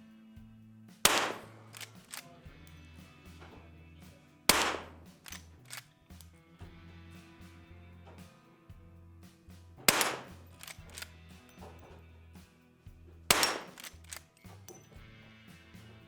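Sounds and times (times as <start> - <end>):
rifle shots with echo: 1.1 - 2.2, 4.5 - 5.8, 9.9 - 11.1, 13.3 - 14.2
rifle action clicks: 1.1 - 2.3, 4.5 - 6.3, 9.9 - 11.1, 13.3 - 14.9.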